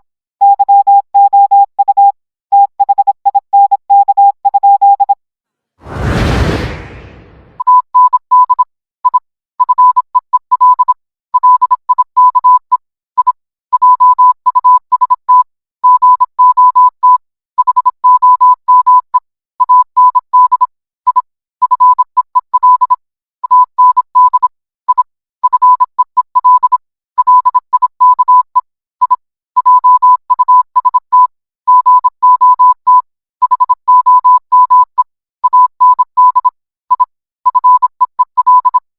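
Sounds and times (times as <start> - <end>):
morse code beeps: 0.4 - 5.2, 7.6 - 22.0.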